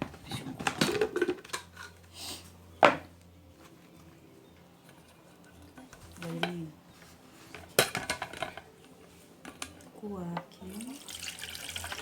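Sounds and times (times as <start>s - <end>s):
kitchenware being handled: 0.0s - 2.0s, 7.5s - 8.7s.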